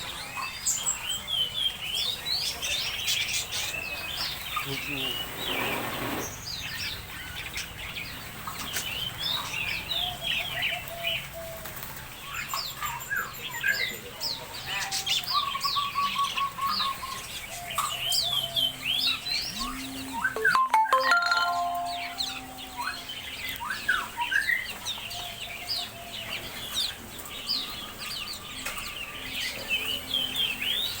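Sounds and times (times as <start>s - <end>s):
small birds chirping: 0.0s - 31.0s
lower repeated bird notes: 17.8s - 22.7s.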